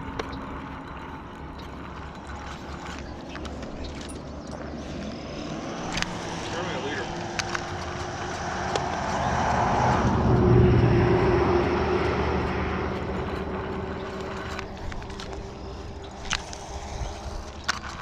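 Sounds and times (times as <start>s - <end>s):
motor vehicle passing by: 2.1s - 18.0s.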